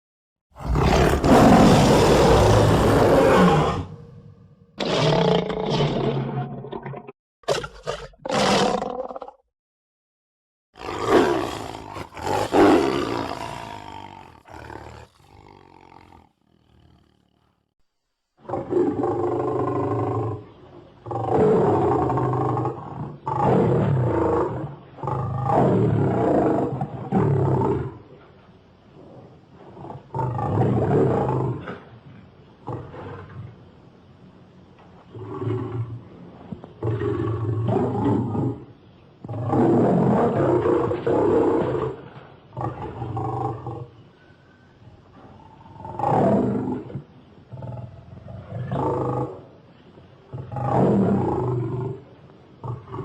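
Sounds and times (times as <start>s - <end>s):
lion roaring: 0.6s - 9.4s, 10.8s - 17.6s, 45.2s - 49.5s, 50.2s - 53.0s.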